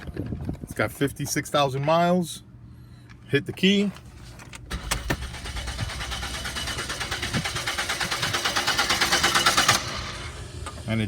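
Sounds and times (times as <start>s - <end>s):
engine cranking without starting: 4.6s - 10.9s.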